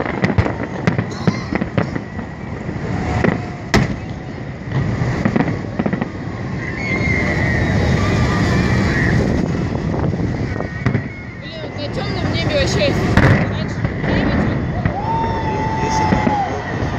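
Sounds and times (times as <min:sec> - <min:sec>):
fireworks bangs and crackles: 0:00.0 - 0:16.9
low rumble: 0:00.0 - 0:16.9
wavering high whistle: 0:06.6 - 0:09.4, 0:10.4 - 0:11.8.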